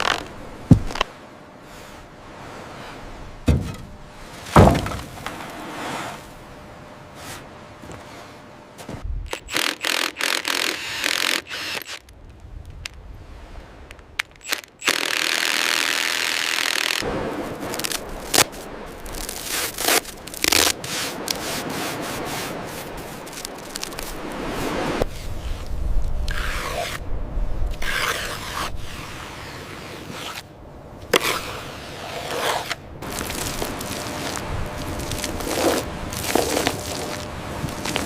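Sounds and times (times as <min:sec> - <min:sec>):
scraping and rubbing: 0:27.7 - 0:30.4, 0:31.2 - 0:38.0.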